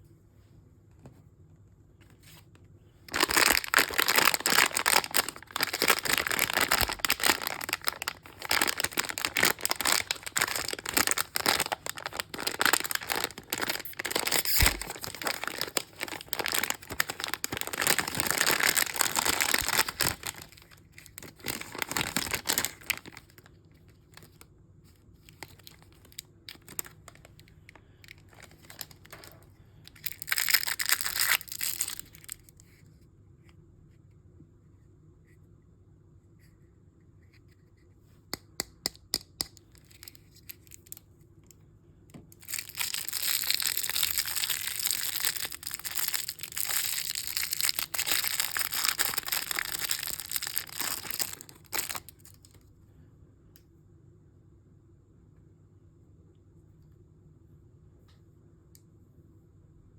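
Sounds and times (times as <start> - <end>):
plastic packaging crinkling: 3.1 - 24.4, 25.1 - 32.8, 39.5 - 41.0, 42.3 - 52.6.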